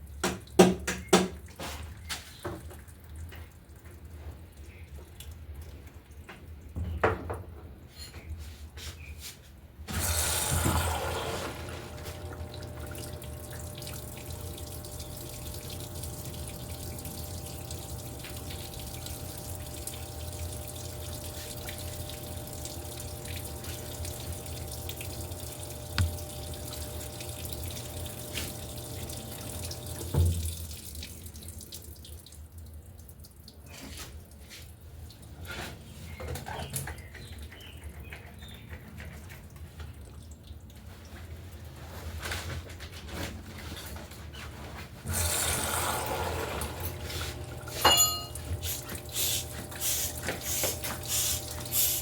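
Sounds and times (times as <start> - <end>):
washing machine water rushing: 9.9 - 35.8, 43.4 - 52.0
washing machine thump: 30.1 - 30.5.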